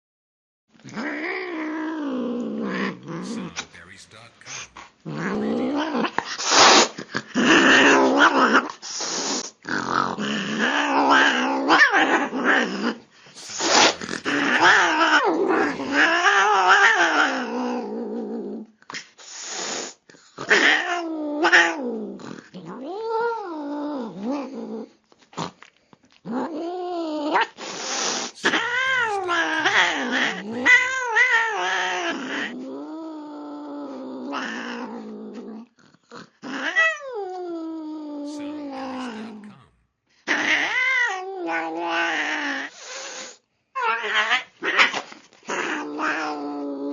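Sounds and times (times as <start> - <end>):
cat growling and yowling: 0.9 - 3.6, 5.1 - 18.7, 20.4 - 25.0, 26.2 - 46.9
cat hissing: 4.4 - 7.1, 8.6 - 9.6, 13.2 - 16.1, 19.2 - 20.0, 27.4 - 32.5, 38.2 - 39.7, 42.6 - 43.4.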